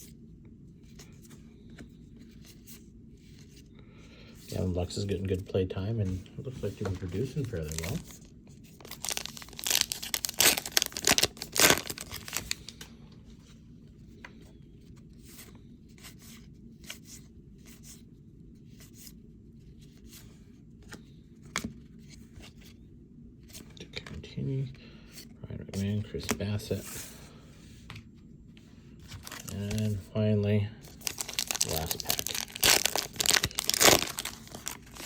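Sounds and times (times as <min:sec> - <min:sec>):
foil wrapper tearing and crinkling: 0:08.8 - 0:12.7, 0:29.2 - 0:29.8, 0:30.9 - 0:35.0.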